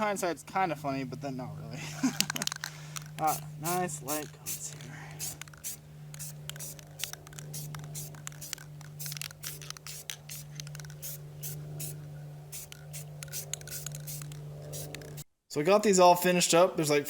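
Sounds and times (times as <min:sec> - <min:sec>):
steady low hum: 0:00.0 - 0:15.8
spray can hissing: 0:03.2 - 0:15.2.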